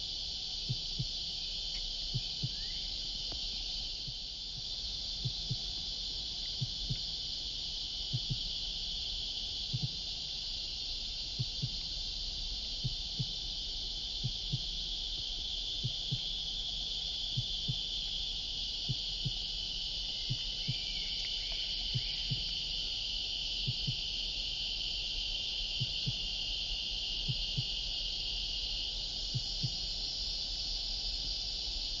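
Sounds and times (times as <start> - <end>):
cicadas droning: 0.0 - 32.0
soft low thumps: 0.6 - 7.3, 8.0 - 8.7, 9.6 - 10.2, 11.2 - 12.0, 12.7 - 16.5, 17.3 - 18.1, 18.8 - 22.7, 23.6 - 24.2, 29.2 - 30.0
faint chirping call: 0.7 - 4.0, 18.9 - 23.0.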